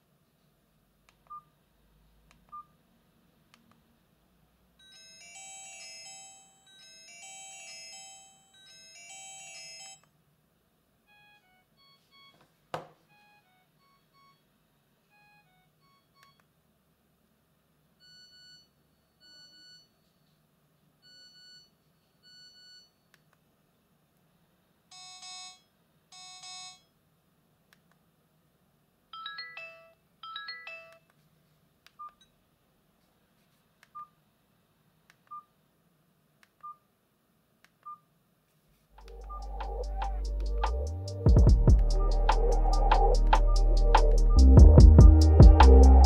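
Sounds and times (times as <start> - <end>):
phone ringtones: 29.2 - 31.0
falling chirps: 39.0 - 41.2, 41.8 - 44.6
short beeps: 39.1 - 40.8, 41.8 - 44.8
buzzy tones: 39.1 - 46.0.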